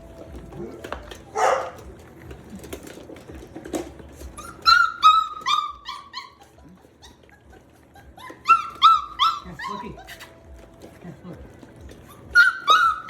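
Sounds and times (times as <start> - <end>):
puppy whining: 0.0 - 13.0.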